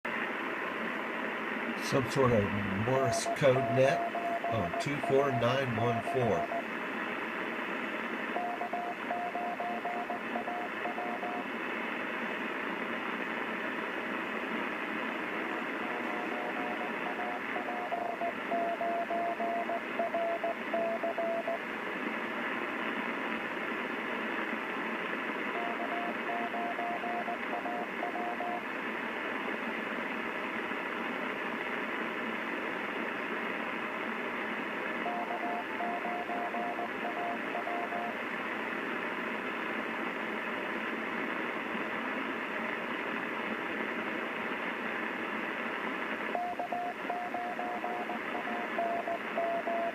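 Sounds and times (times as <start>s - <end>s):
radio receiver hiss: 0.1s - 49.9s
morse code beeping: 1.9s - 6.6s, 8.4s - 11.4s, 15.8s - 21.6s, 25.6s - 28.6s, 35.0s - 38.1s, 46.4s - 49.9s.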